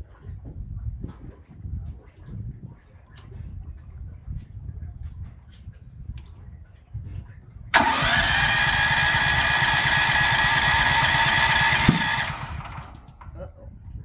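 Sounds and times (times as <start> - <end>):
electric starter cranking engine: 7.7 - 13.2.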